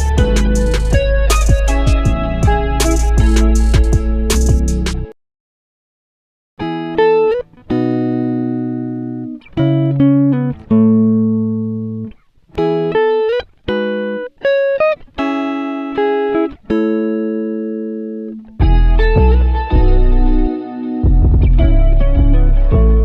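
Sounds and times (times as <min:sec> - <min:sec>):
guitar plucking chords: 0:00.0 - 0:05.2, 0:06.6 - 0:23.0.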